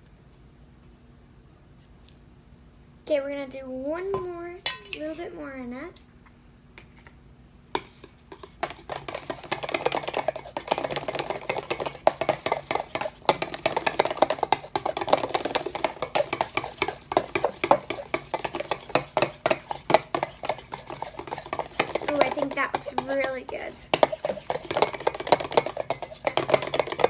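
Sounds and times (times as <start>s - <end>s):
utensil scraping a bowl: 7.8s - 27.0s.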